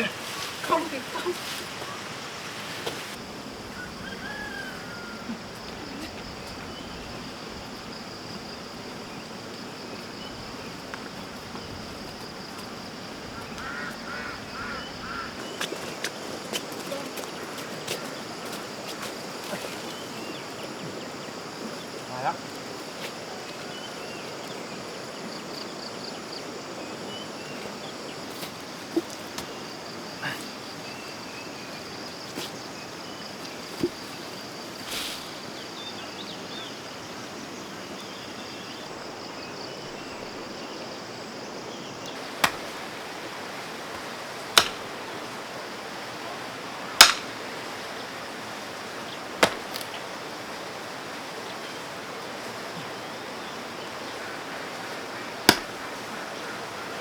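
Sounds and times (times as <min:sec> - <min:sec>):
steady outdoor hiss: 0:00.0 - 0:57.0
digging tool chopping soil: 0:42.2 - 0:42.9, 0:43.9 - 0:45.0, 0:47.0 - 0:47.4, 0:49.4 - 0:49.9, 0:55.4 - 0:55.8.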